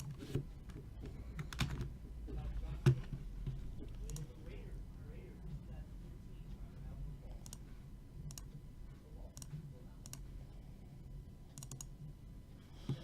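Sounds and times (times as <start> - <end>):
low steady hum: 0.0 - 13.0
computer mouse clicks: 4.0 - 4.3, 7.4 - 7.6, 8.3 - 8.5, 9.4 - 10.2, 11.5 - 11.9.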